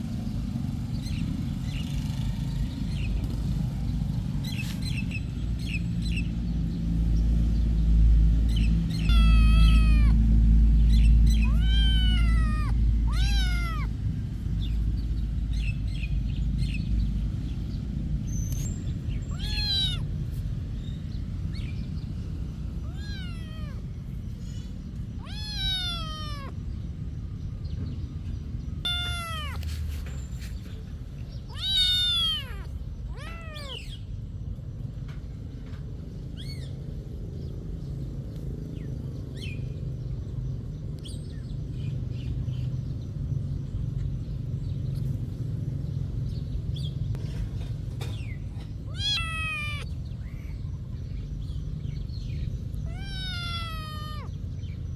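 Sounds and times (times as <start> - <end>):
cat meowing: 8.5 - 14.8, 18.5 - 21.7, 22.7 - 26.9, 28.8 - 29.9, 31.4 - 34.1, 48.5 - 50.5, 52.1 - 54.8.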